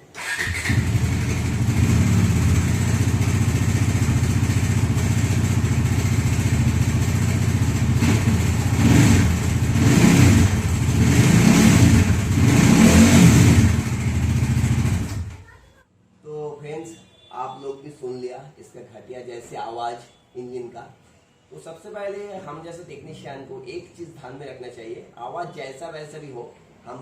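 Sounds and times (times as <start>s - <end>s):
motorcycle engine revving: 0.2s - 15.4s
abnormal engine noise: 0.4s - 15.3s.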